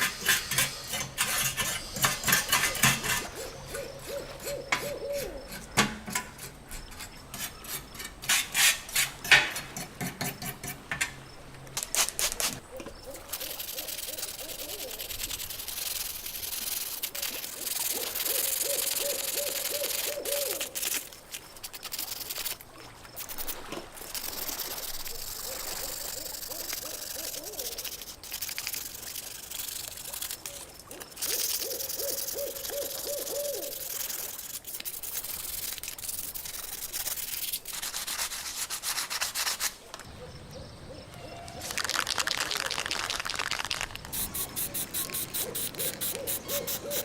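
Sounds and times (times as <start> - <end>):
sanding on metal: 0.0 - 3.4, 13.3 - 20.8, 33.6 - 39.8, 44.2 - 47.0.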